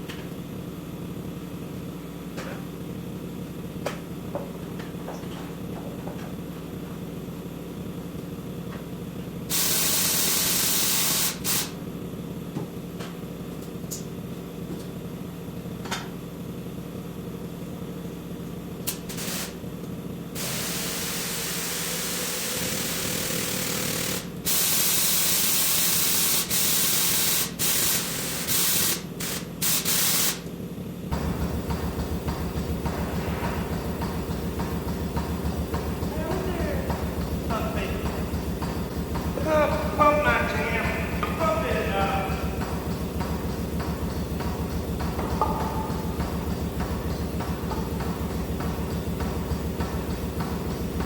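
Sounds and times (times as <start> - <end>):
machine hum: 0.0 - 51.0
compressed air hissing: 9.5 - 11.8, 18.9 - 19.6, 20.4 - 30.5.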